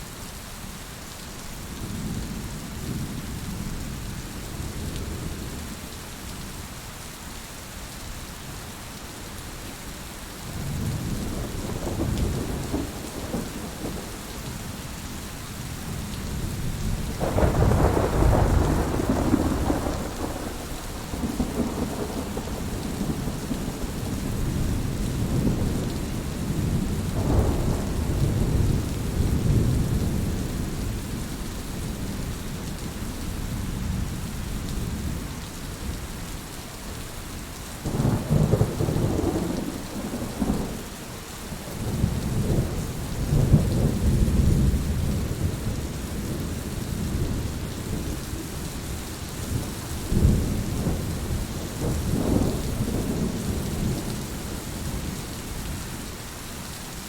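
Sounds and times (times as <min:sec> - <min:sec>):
heavy rain falling: 0:00.0 - 0:57.0
thunder rumbling: 0:10.6 - 0:14.6, 0:15.9 - 0:31.1, 0:37.9 - 0:40.9, 0:41.6 - 0:55.2.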